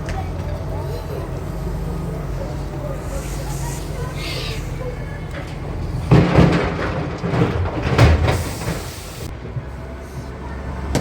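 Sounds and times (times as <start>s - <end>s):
engine droning: 0.0s - 11.0s
demolition debris crashing: 4.8s - 9.6s.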